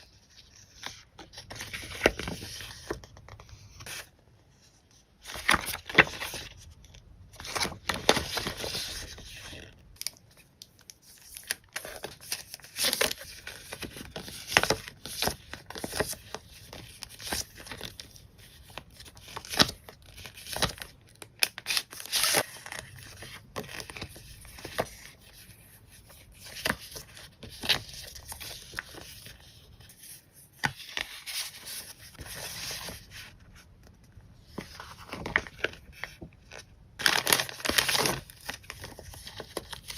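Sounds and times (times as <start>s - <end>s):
packaging crinkling and tearing: 34.7s - 39.9s.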